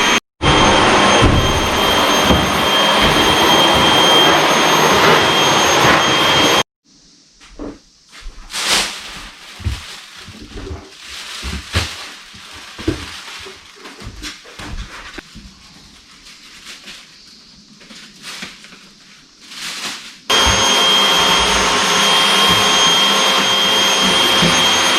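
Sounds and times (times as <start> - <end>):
vacuum cleaner whine: 0.0 - 6.6, 20.3 - 24.9
rustling: 7.4 - 24.8.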